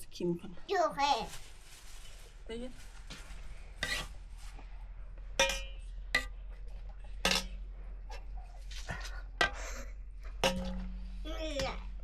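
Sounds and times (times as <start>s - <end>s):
cookware and dishes clinking: 3.8s - 4.2s, 5.2s - 12.0s.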